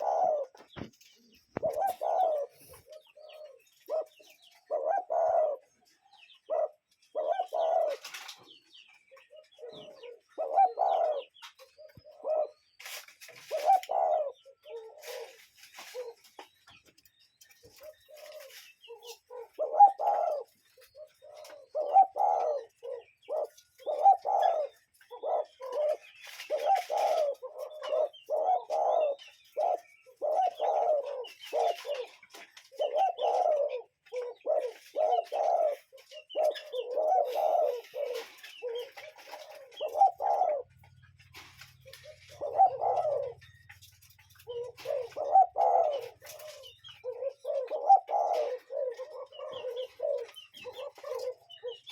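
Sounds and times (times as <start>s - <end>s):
bird cooing: 0.0s - 51.9s.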